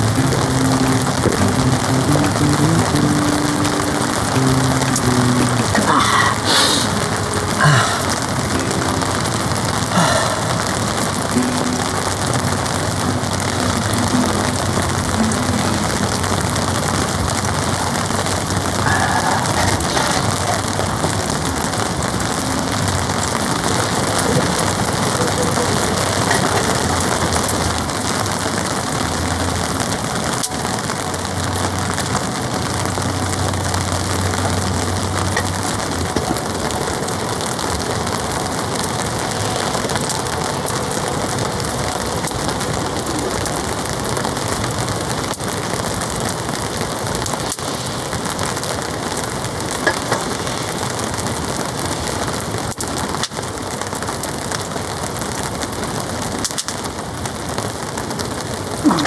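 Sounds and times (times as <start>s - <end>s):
heavy rain drumming on a tarp: 0.0s - 59.0s.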